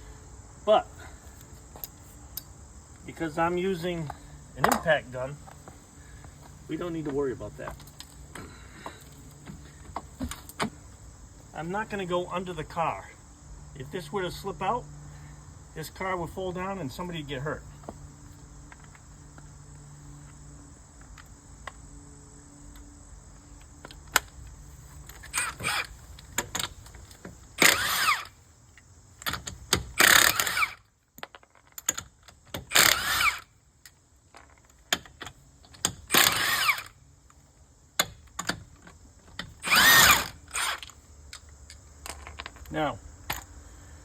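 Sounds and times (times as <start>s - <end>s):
impact gun whining: 25.0s - 28.3s, 29.2s - 30.8s, 32.5s - 33.5s, 35.8s - 37.0s, 39.3s - 41.0s.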